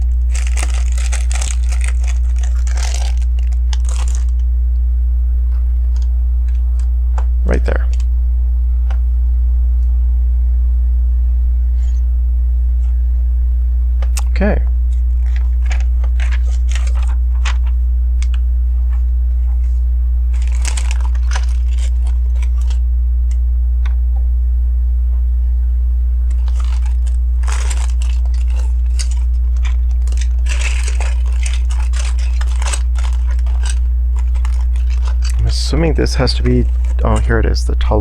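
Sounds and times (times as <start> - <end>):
low electrical hum: 0.0 - 38.0.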